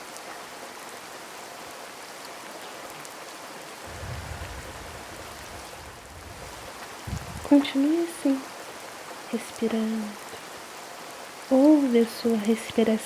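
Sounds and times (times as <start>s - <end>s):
low rumble: 3.8s - 7.6s
waterfall rushing: 3.8s - 9.1s.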